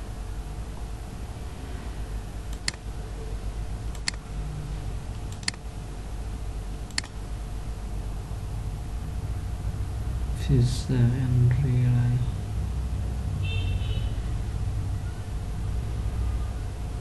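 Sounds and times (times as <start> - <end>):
low hum: 0.0 - 17.0
computer mouse clicks: 2.5 - 2.8, 3.9 - 4.2, 5.2 - 5.6, 6.9 - 7.2.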